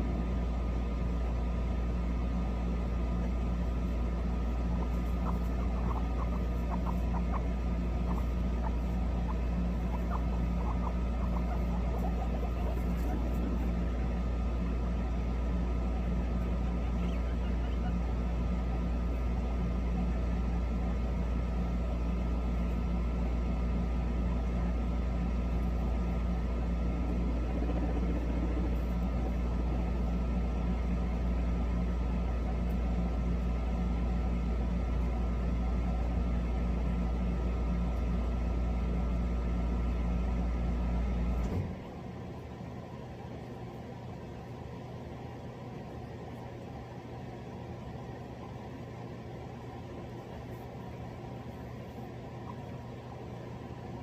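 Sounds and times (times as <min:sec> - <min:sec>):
motor humming: 0:01.6 - 0:20.2.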